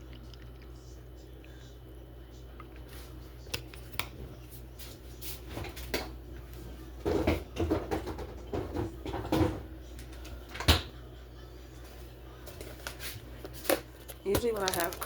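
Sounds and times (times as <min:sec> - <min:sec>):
kitchen clattering and rustling: 0:05.3 - 0:06.2, 0:07.0 - 0:10.9.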